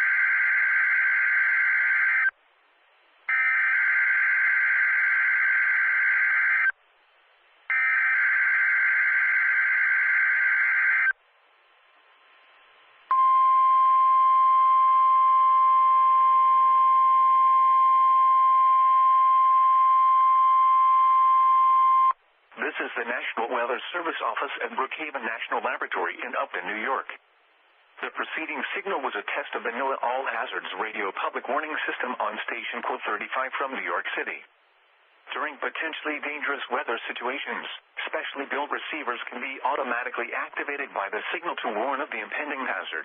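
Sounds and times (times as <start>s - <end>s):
steady warning alarm tone: 0.0s - 2.3s, 3.3s - 6.7s, 7.7s - 11.2s.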